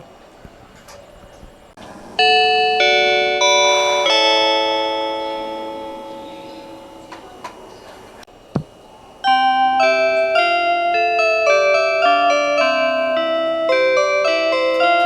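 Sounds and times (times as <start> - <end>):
bell-like train chime: 2.2 - 7.7, 9.2 - 15.0.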